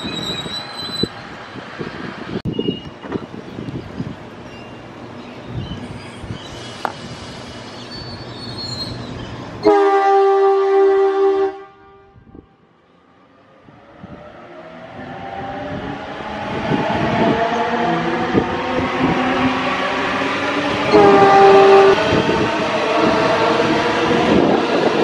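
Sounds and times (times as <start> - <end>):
train approaching: 0.0 - 25.0
train running past: 3.2 - 25.0
train horn blast: 9.6 - 12.6, 16.6 - 24.5.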